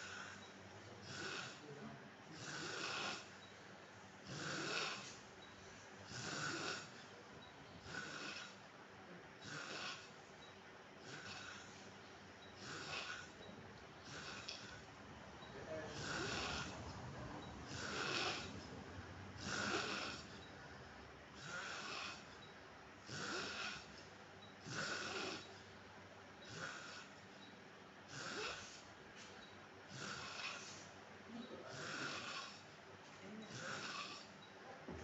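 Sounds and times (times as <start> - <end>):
man snoring: 1.0 - 1.8, 2.4 - 3.4, 4.2 - 5.2, 6.0 - 7.1, 7.8 - 8.6, 9.4 - 10.2, 11.0 - 11.9, 12.6 - 13.4, 14.0 - 14.9, 15.5 - 20.5, 21.3 - 22.4, 23.0 - 24.0, 24.6 - 25.6, 26.4 - 27.2, 28.1 - 28.8, 29.9 - 30.8, 31.6 - 32.8, 33.5 - 34.3.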